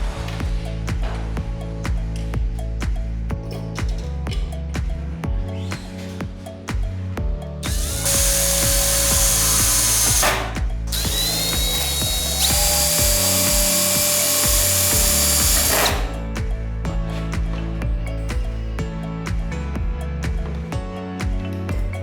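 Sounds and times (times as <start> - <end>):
background music with steady beat: 0.0 - 22.0
electric power tool running: 7.6 - 16.2.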